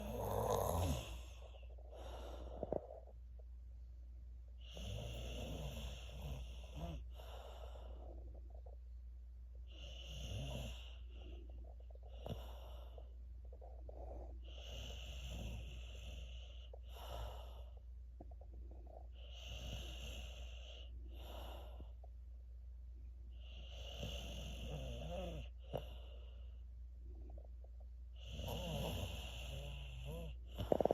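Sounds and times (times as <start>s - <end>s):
child snoring: 0.0s - 1.6s, 4.7s - 7.4s, 9.8s - 11.1s, 14.5s - 16.2s, 23.6s - 26.0s, 28.2s - 30.9s
steady low hum: 0.0s - 30.9s.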